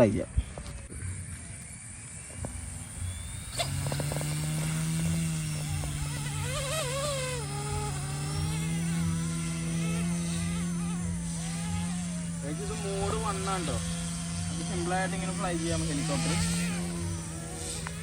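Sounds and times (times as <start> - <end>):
motor and rotor blades humming: 0.0 - 18.0.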